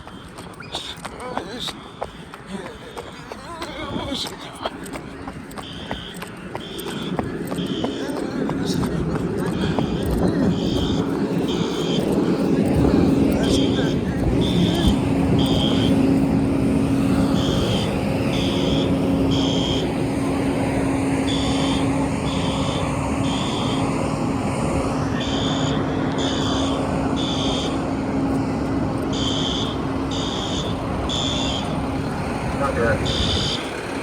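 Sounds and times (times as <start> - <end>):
idling fire engine rumble: 0.0 - 34.0
fire alarm horn beeps: 5.5 - 8.9, 9.5 - 28.4, 29.0 - 31.8, 32.7 - 33.7.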